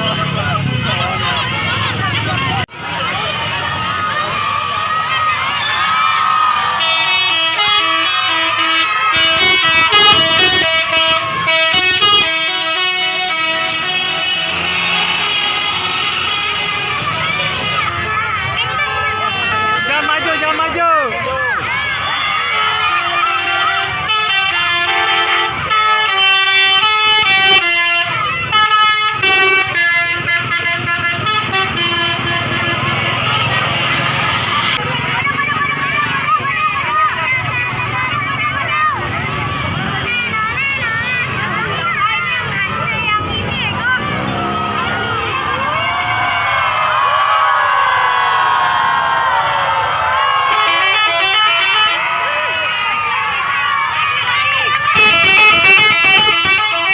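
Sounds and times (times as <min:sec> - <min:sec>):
multi-tone bus air horn tune: 0:06.8 - 0:20.7, 0:22.4 - 0:34.8, 0:50.5 - 0:52.8, 0:54.2 - 0:56.9.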